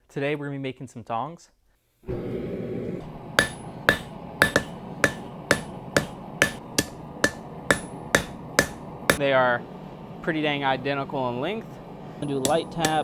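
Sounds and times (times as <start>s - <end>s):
hammer striking steel on anvil: 3.0s - 9.2s, 12.2s - 13.0s.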